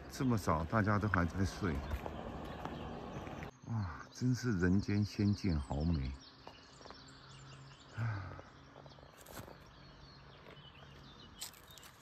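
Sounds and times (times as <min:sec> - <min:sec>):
faint bird chirps: 0:00.0 - 0:12.0.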